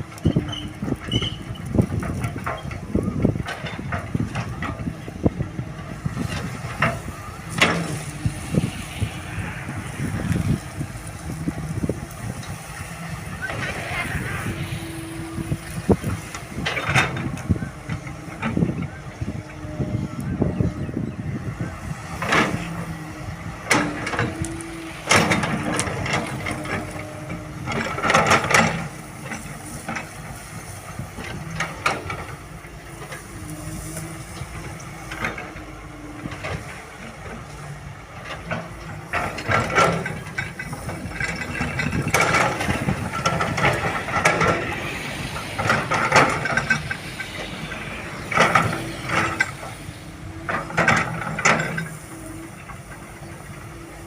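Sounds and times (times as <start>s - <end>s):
excavator diesel engine humming: 0.0s - 54.0s
clanks and rattles: 0.2s - 8.6s, 15.5s - 19.3s, 23.6s - 53.8s.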